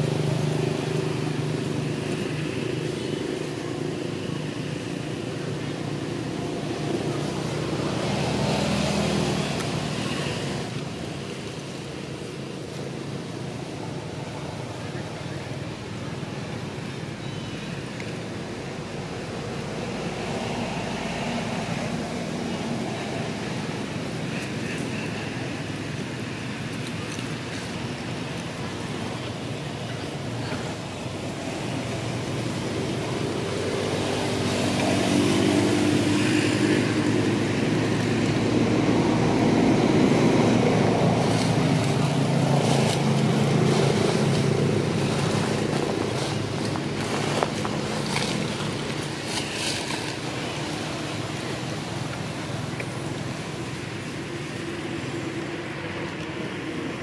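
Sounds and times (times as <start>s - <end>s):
vehicle engine passing by: 32.7s - 51.9s.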